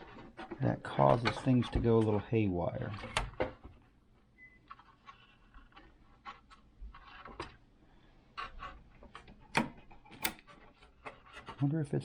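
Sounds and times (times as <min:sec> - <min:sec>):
light clicks and knocks of parts: 0:08.4 - 0:11.7.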